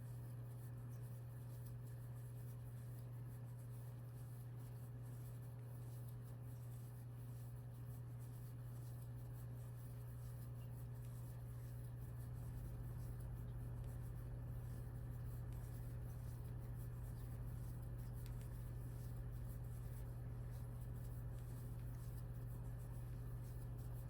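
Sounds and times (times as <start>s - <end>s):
steady low hum: 0.0s - 24.0s
crochet hook scratching yarn: 1.6s - 24.0s.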